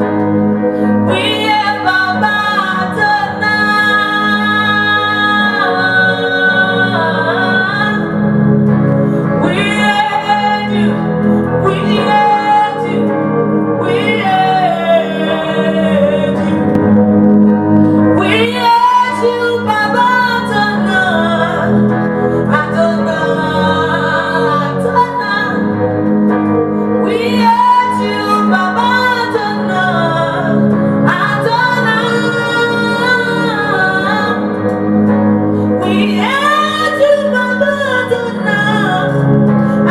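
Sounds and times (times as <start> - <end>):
instrumental accompaniment: 0.0 - 39.9
woman singing: 0.8 - 8.4, 9.4 - 16.8, 18.1 - 26.1, 27.0 - 34.9, 35.7 - 39.9.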